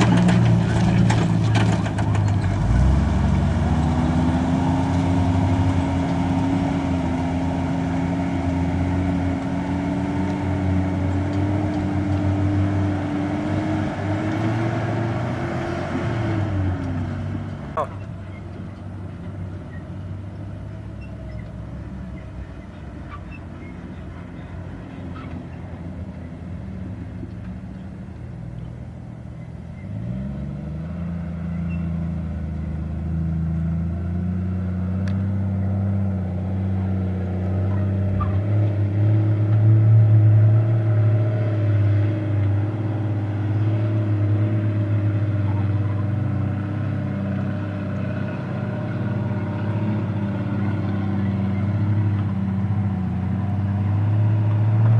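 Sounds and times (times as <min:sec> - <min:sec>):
vehicle engine revving: 0:00.0 - 0:18.2, 0:29.7 - 0:54.9.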